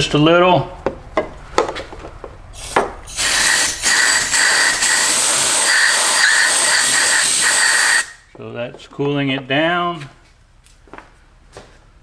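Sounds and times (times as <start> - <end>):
air duster can clicks: 2.6 - 8.2
compressed air spray hiss: 2.6 - 8.2.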